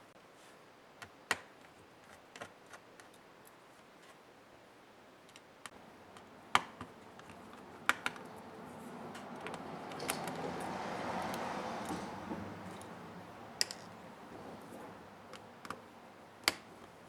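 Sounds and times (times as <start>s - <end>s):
clicks of plastic laptop parts: 1.0s - 3.2s, 6.1s - 8.5s, 9.1s - 12.9s, 15.3s - 17.0s
rustling and scraping: 6.1s - 16.0s.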